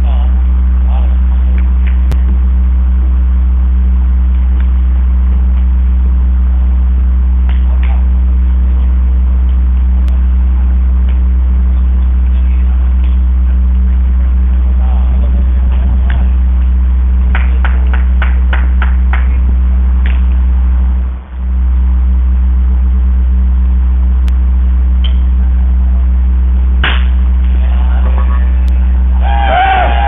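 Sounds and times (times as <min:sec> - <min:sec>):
loud steady low hum: 0:00.0 - 0:30.0
sharp crack: 0:26.8 - 0:27.6.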